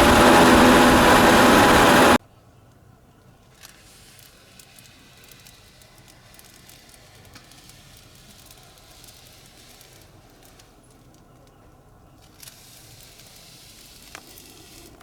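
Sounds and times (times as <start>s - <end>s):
air conditioning hiss: 0.0s - 2.2s
small crackles: 3.5s - 15.0s.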